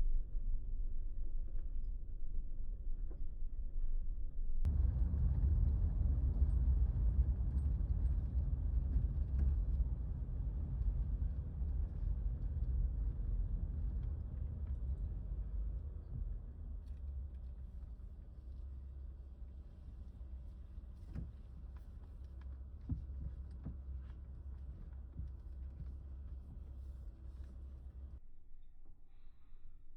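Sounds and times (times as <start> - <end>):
van road and engine rumble: 4.6 - 28.2.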